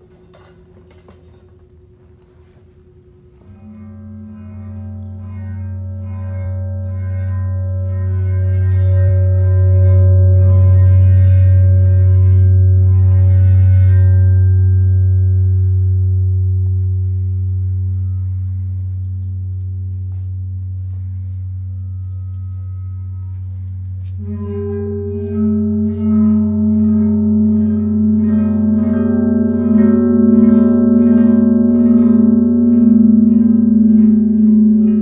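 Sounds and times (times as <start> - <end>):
low drone: 1.8 - 35.0
plucked string notes: 3.7 - 18.8, 24.2 - 35.0
held ringing tones: 21.5 - 35.0.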